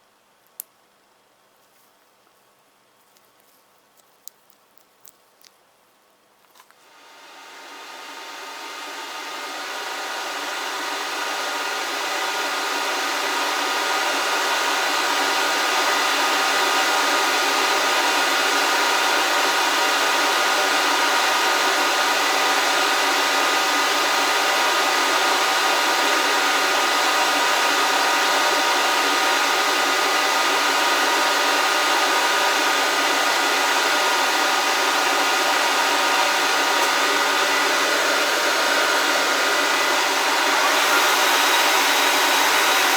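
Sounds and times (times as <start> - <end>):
hot air station fan humming: 6.9 - 18.6, 31.4 - 42.9.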